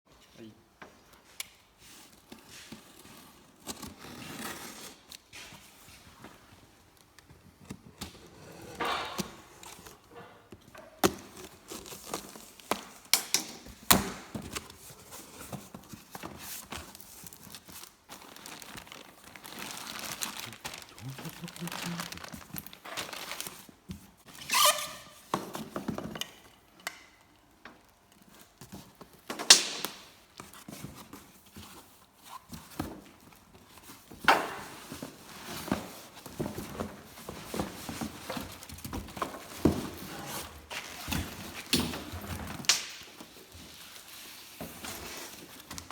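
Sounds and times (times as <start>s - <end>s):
objects knocking and clunking: 7.6s - 14.7s
rustling: 14.8s - 23.7s.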